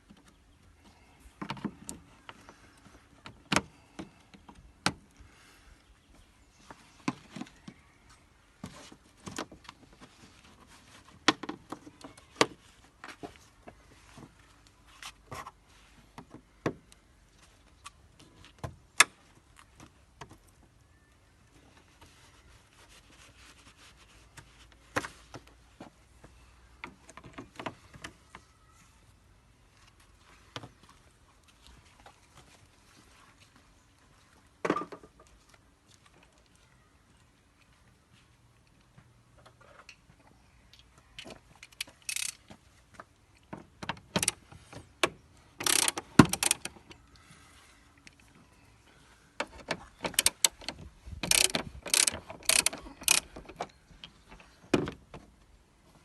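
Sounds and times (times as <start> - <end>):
hand tools clicking and knocking: 41.6 - 42.4, 45.0 - 46.8, 49.4 - 53.8.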